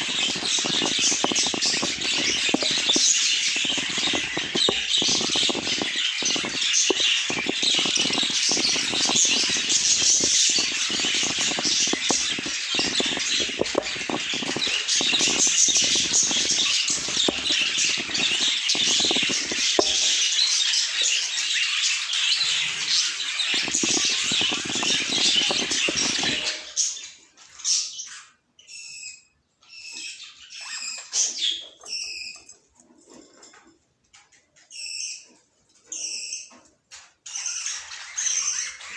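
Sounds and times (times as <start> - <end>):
budgie chirps: 0.0 - 20.4, 23.4 - 26.6
budgies chattering and warbling: 0.0 - 38.9.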